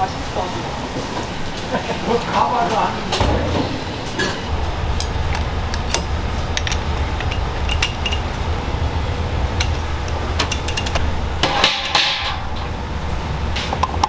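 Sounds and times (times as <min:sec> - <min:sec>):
steady low hum: 0:00.0 - 0:14.0
metal utensils clinking: 0:03.1 - 0:14.0.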